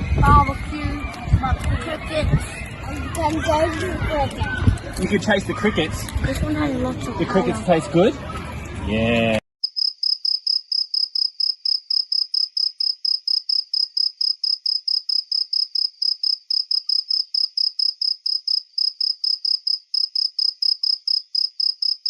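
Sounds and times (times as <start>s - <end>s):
cricket chirping: 9.6s - 22.0s.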